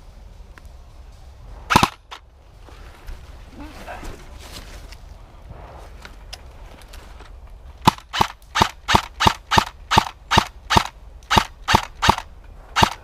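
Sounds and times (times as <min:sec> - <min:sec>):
airsoft gun shots: 0:01.7 - 0:02.2, 0:07.8 - 0:13.0.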